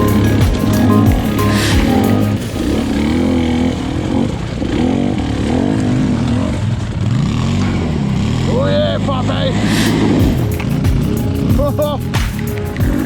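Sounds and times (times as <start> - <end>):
steady tones: 0.0 - 4.8
dirt bike engine revving: 0.0 - 11.1.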